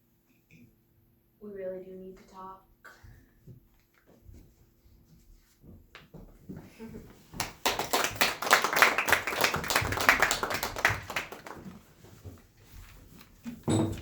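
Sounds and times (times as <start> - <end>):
audience clapping: 7.4 - 11.9.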